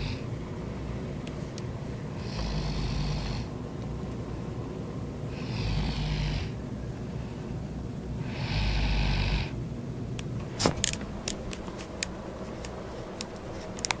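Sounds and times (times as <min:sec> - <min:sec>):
woman snoring: 0:00.0 - 0:00.2, 0:02.2 - 0:03.5, 0:05.3 - 0:06.6, 0:08.2 - 0:09.6.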